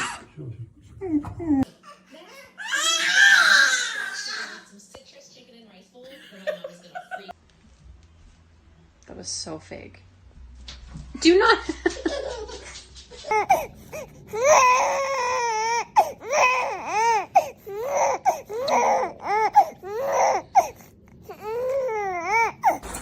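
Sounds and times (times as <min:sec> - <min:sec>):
infant crying: 0:01.1 - 0:04.7, 0:13.3 - 0:22.9.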